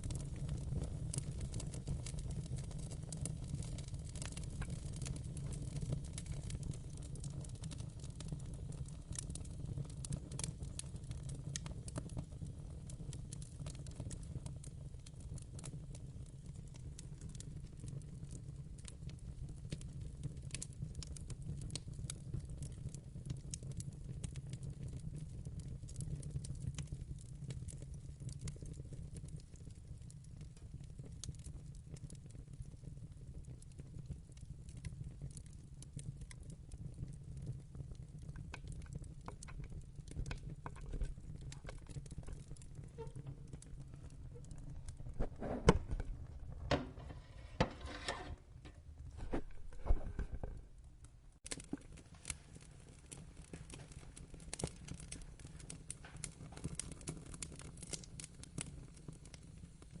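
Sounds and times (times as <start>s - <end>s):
wood fire crackling: 0.0s - 60.0s
fire sharp pops: 38.4s - 50.7s, 51.4s - 58.9s.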